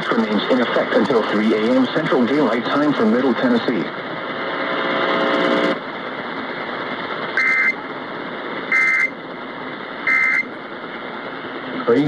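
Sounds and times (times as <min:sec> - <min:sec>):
radio static hiss: 0:00.0 - 0:12.0
screechy data tone bursts: 0:07.4 - 0:07.8, 0:08.7 - 0:09.2, 0:10.1 - 0:10.5
steady buzzy tone: 0:07.4 - 0:07.8, 0:08.7 - 0:09.2, 0:10.1 - 0:10.6.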